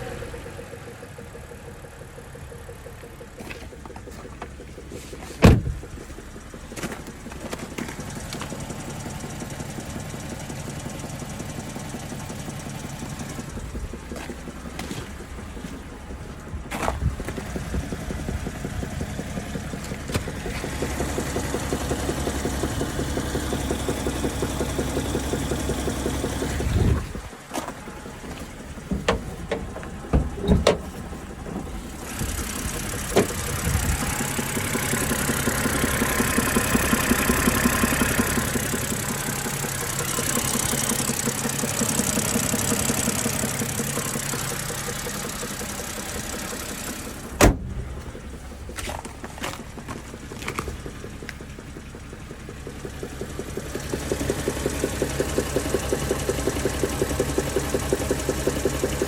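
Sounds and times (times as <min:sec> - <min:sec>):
car engine running: 0:00.0 - 0:59.0
sharp engine knocks: 0:03.4 - 0:08.8, 0:13.2 - 0:51.6.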